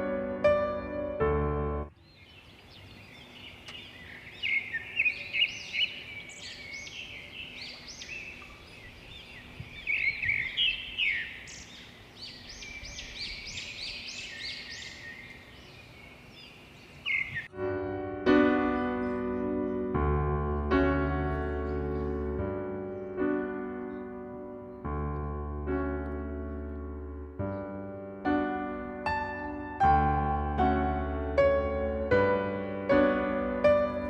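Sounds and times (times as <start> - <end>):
small birds chirping: 1.9 - 17.6, 18.4 - 25.2.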